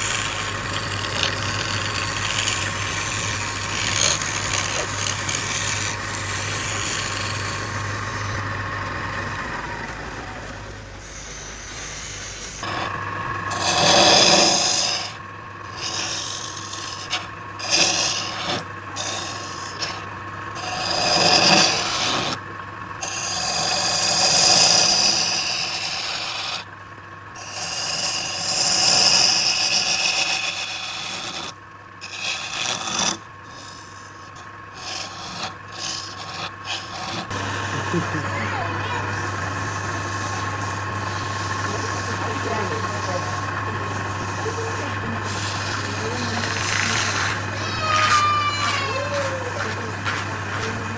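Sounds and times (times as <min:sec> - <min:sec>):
hand tool scraping wood: 0:00.0 - 0:22.4, 0:23.0 - 0:26.7, 0:27.4 - 0:50.9
steady hum: 0:00.0 - 0:50.9.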